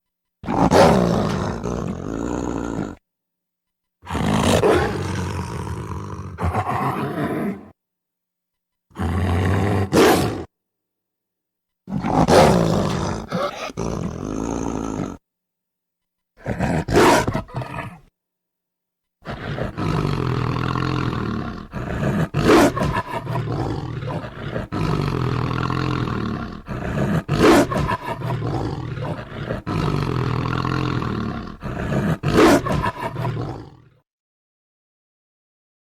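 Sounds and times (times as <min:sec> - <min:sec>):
loud snarls: 0:00.4 - 0:03.0, 0:04.0 - 0:07.8, 0:08.9 - 0:10.5, 0:11.9 - 0:15.2, 0:16.4 - 0:18.1, 0:19.2 - 0:34.0
low growling: 0:00.4 - 0:03.0, 0:04.1 - 0:07.8, 0:11.9 - 0:15.2, 0:16.4 - 0:18.1, 0:19.2 - 0:34.0.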